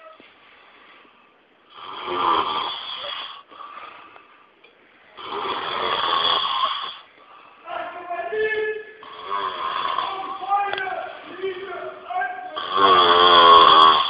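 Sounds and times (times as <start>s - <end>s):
person snoring loudly: 1.7s - 3.4s, 5.2s - 7.0s, 9.0s - 10.4s, 12.6s - 14.0s.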